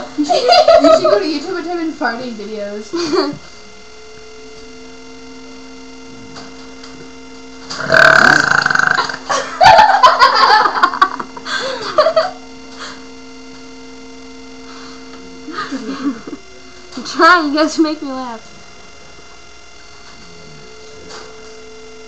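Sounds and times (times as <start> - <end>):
steady electrical hum: 0.0 - 22.0
person burping loudly: 7.7 - 9.3.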